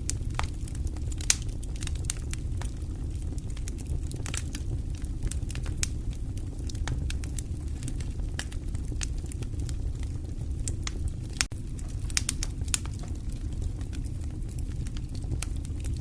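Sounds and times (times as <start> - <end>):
fireplace fire crackling: 0.0 - 16.0.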